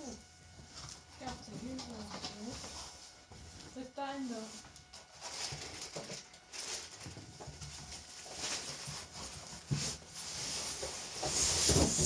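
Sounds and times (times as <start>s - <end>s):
cardboard rustling and scraping: 0.6s - 12.0s.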